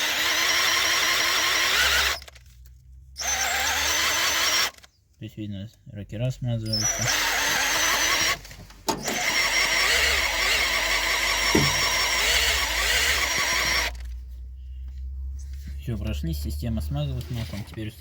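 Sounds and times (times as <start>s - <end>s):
cordless drill whining: 0.0s - 2.6s, 3.2s - 4.9s, 6.6s - 14.2s.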